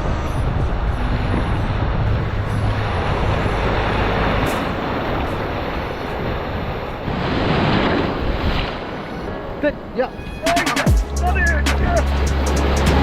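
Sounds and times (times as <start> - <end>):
low motor hum: 0.0 - 5.7
water rushing: 0.0 - 13.0.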